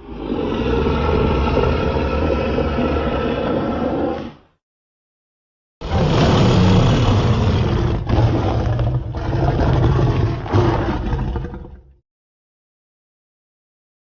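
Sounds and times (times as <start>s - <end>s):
monster roar: 0.0s - 4.4s, 5.8s - 12.0s.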